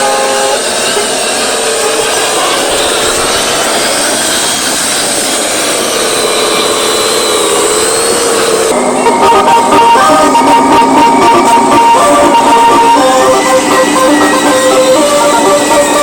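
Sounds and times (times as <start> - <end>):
motor whining: 0.0 - 16.0
music: 8.7 - 16.0.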